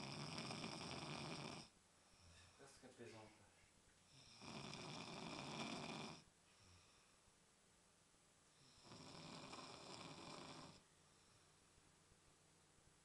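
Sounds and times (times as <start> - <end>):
man snoring: 0.0 - 1.7, 4.1 - 6.2, 8.6 - 10.8
quiet breathing: 0.0 - 7.4, 8.4 - 11.9.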